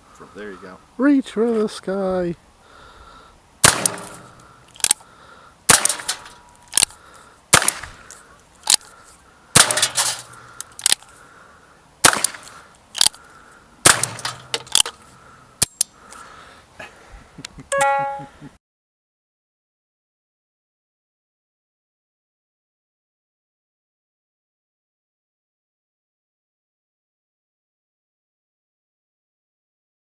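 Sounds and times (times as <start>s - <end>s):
gunshots: 3.6s - 4.4s, 5.7s - 6.3s, 7.5s - 8.0s, 9.6s - 10.2s, 12.0s - 12.5s, 13.8s - 14.8s.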